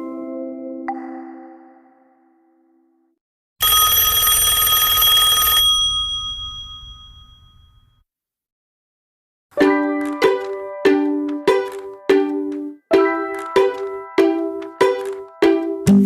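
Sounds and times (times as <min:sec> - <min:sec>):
high ringing alert tones: 0:03.6 - 0:07.9.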